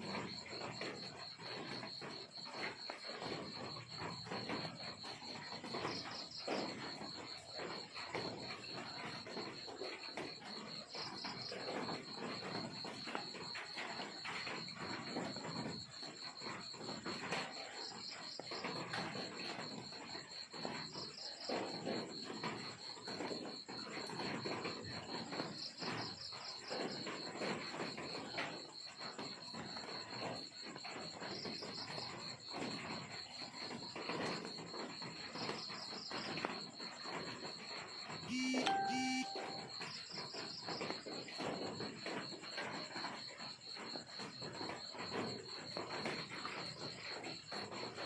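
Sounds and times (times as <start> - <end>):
crickets trilling: 0.0 - 48.0
insect chirping: 38.3 - 40.9.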